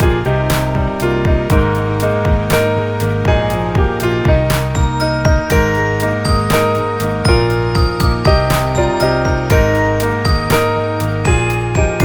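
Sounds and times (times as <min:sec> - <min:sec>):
music with steady beat: 0:00.0 - 0:12.0
high bell-like chimes: 0:04.7 - 0:12.0.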